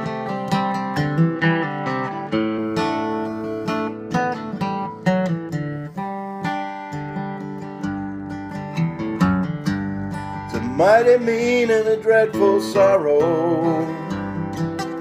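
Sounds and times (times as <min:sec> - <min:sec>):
acoustic guitar strummed and picked: 0:00.0 - 0:15.0.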